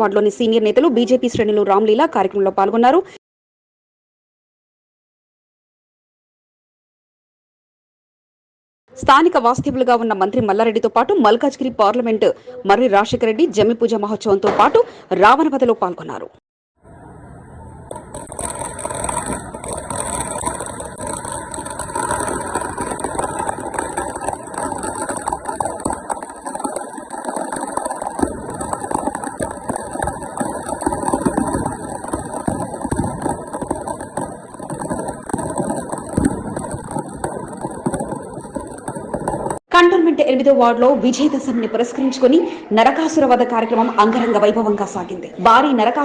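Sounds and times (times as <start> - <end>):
firecrackers crackling and popping: 17.8 - 39.6.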